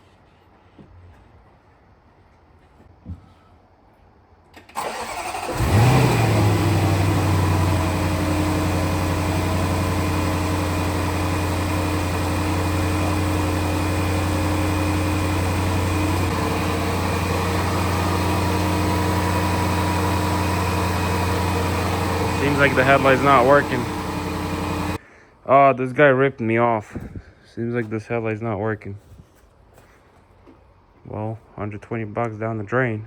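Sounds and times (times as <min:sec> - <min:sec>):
engine cranking and idling: 0:04.7 - 0:25.0.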